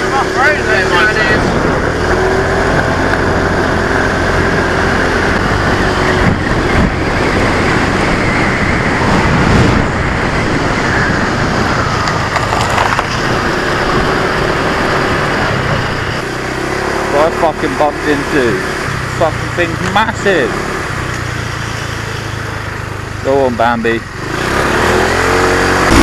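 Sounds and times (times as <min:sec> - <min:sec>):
steady rush of noise: 0:00.0 - 0:17.0
small motorcycle engine running: 0:00.0 - 0:26.0.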